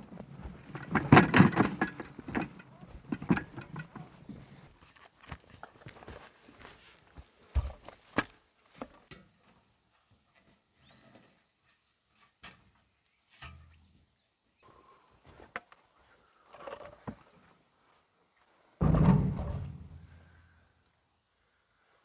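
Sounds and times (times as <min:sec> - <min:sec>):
knocks and clicks: 0:00.7 - 0:04.0.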